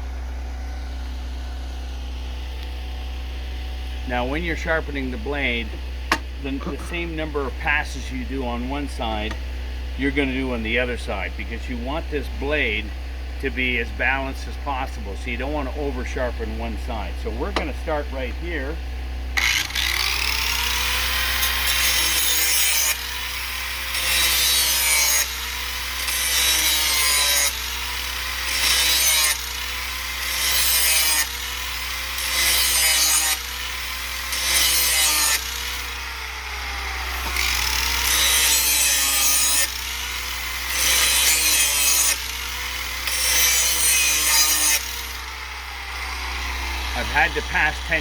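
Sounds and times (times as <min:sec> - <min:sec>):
electric grinder grinding metal: 0:03.5 - 0:09.4, 0:19.4 - 0:48.0.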